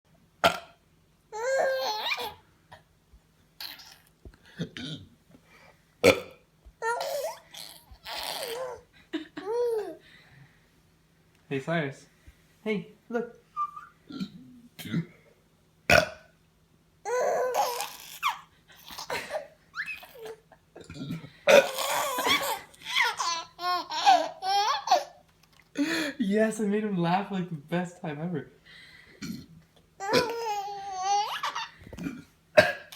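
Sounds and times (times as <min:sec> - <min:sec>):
man burping: 0:00.4 - 0:00.8, 0:04.5 - 0:05.2, 0:06.0 - 0:06.4, 0:14.1 - 0:15.2, 0:15.9 - 0:16.3, 0:20.8 - 0:22.0, 0:29.2 - 0:30.5, 0:31.9 - 0:32.9
baby squealing with laughter: 0:01.4 - 0:02.4, 0:03.6 - 0:04.1, 0:06.8 - 0:08.8, 0:17.1 - 0:20.4, 0:21.6 - 0:25.2, 0:30.0 - 0:31.8.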